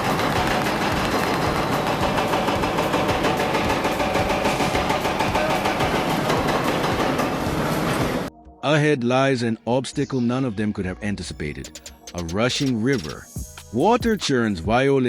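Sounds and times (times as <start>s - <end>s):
diesel engine clattering: 0.0s - 8.3s.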